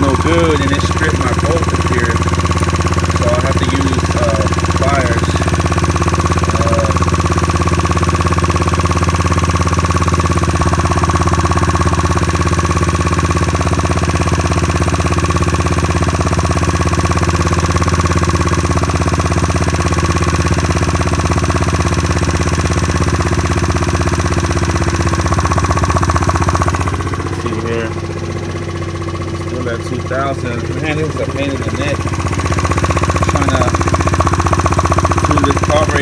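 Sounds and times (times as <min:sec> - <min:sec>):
scooter engine idling fast: 0:00.0 - 0:36.0.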